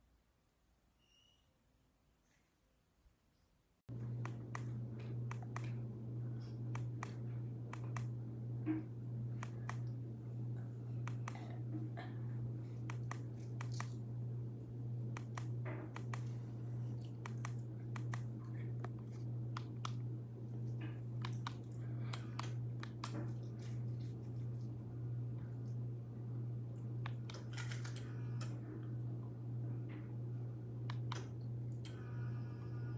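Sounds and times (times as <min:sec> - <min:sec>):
light clicks and taps: 0:12.8 - 0:14.0, 0:15.2 - 0:16.4, 0:17.0 - 0:20.0
pulsing low hum: 0:28.0 - 0:32.9.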